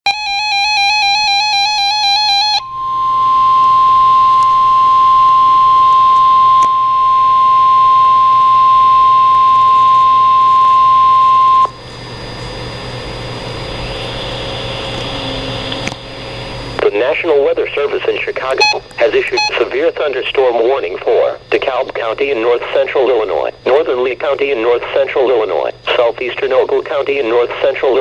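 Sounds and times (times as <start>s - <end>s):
steady warning alarm tone: 0.1s - 26.3s
radio hiss: 16.8s - 28.0s.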